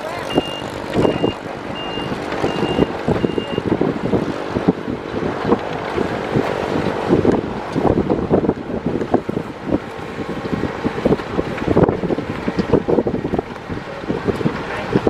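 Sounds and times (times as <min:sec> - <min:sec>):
heavy machine engine running: 0:00.0 - 0:15.0
reversing alarm beeping: 0:00.2 - 0:03.7.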